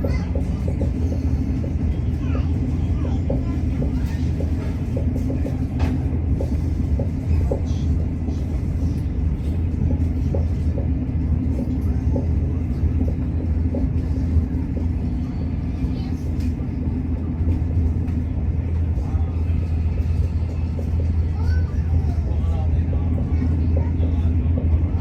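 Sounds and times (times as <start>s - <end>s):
train rumbling: 0.0s - 25.0s.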